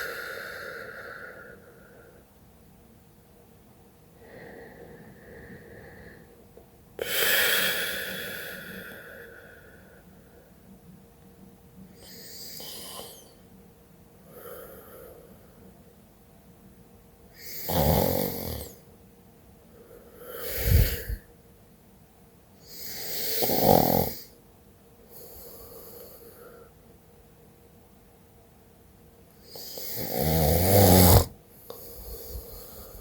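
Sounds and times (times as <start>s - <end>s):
woman snoring: 7.0s - 9.6s, 12.0s - 13.3s, 17.4s - 18.8s, 20.2s - 21.2s, 22.7s - 24.3s, 29.5s - 33.0s.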